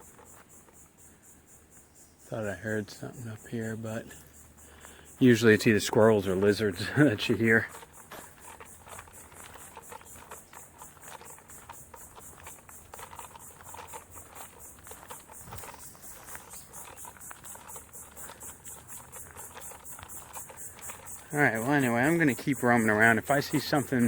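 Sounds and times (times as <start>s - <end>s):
insects chirping: 0.0s - 24.0s
faint rustling: 3.6s - 24.0s.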